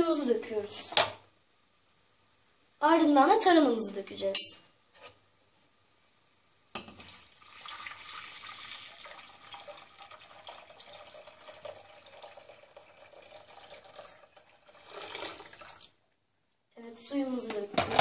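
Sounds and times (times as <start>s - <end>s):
water pouring into a pot: 7.0s - 16.0s.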